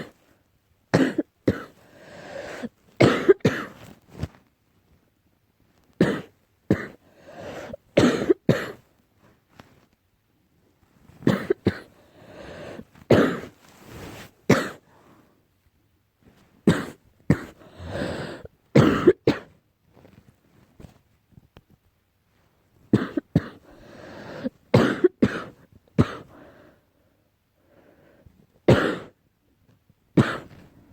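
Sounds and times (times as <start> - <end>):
person coughing: 1.0 - 1.8, 2.5 - 3.8, 6.0 - 8.8, 11.2 - 12.0, 13.1 - 13.5, 14.5 - 14.8, 16.7 - 19.5, 23.0 - 23.7, 24.8 - 26.4, 28.7 - 29.2, 30.2 - 30.6.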